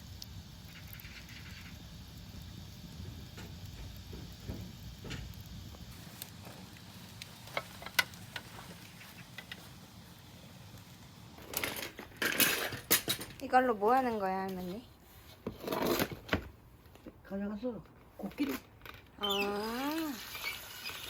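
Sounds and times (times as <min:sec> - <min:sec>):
sharp pops of fire: 0:00.0 - 0:14.6
wood fire crackling: 0:00.0 - 0:21.0.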